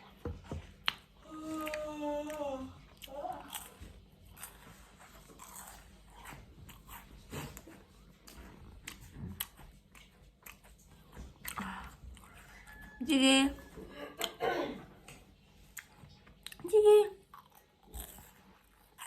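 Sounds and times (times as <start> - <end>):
person chewing crunchily: 0.7 - 13.0, 17.2 - 19.0.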